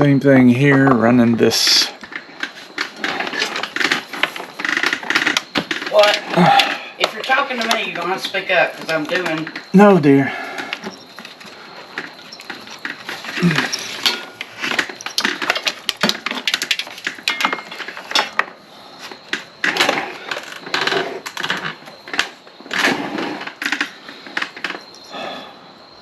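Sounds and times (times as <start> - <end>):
hands clicking and rustling parts: 10.6 - 25.0.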